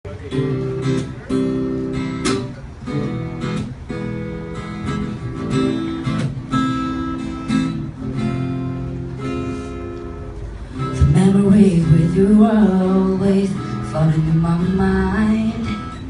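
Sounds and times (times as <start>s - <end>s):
acoustic guitar strumming chords: 0.1s - 16.0s.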